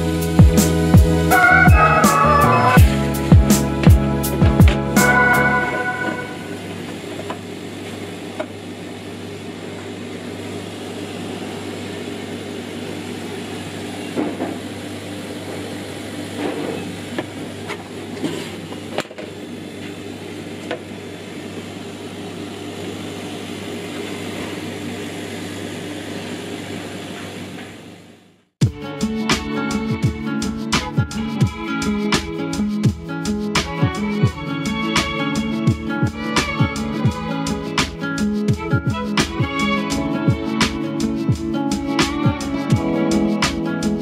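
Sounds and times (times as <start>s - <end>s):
machine hum: 0.0s - 18.2s.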